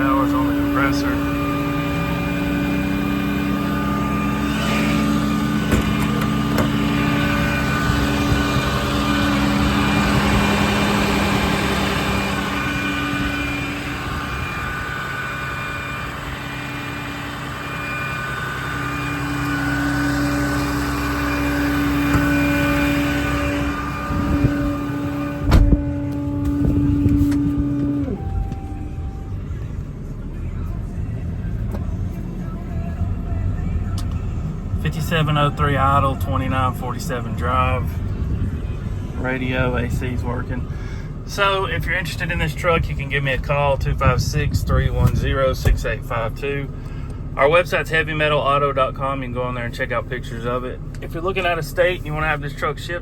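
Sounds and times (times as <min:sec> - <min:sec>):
diesel engine running: 0:00.0 - 0:53.0
sharp thump: 0:25.3 - 0:28.0.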